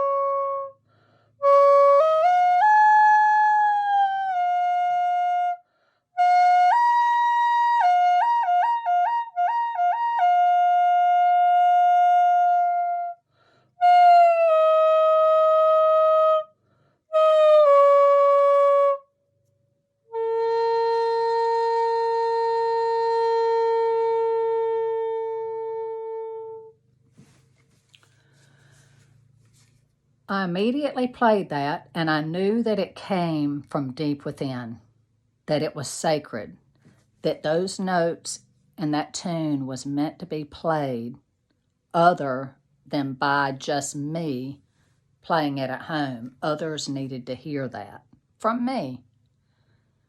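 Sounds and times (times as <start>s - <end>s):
bamboo flute melody: 0.0s - 0.8s, 1.4s - 5.6s, 6.2s - 13.2s, 13.8s - 16.5s, 17.1s - 19.1s, 20.1s - 26.8s.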